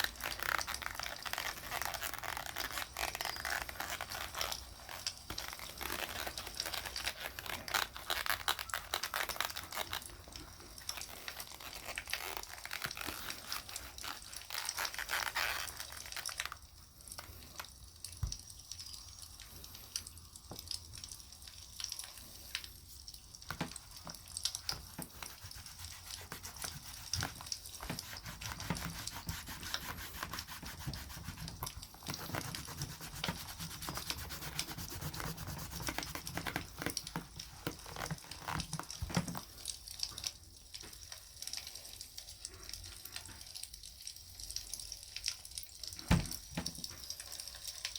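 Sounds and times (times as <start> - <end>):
scratchy rubbing on leather: 0.0 - 10.2, 10.9 - 16.3, 23.5 - 39.4.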